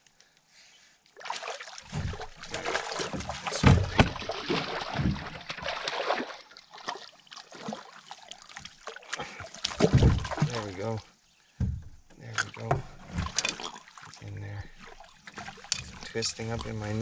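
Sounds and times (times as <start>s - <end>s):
fish splashing at the surface: 1.2s - 10.7s
knocks and thuds against boat: 1.9s - 5.8s, 9.7s - 10.8s, 11.6s - 13.6s.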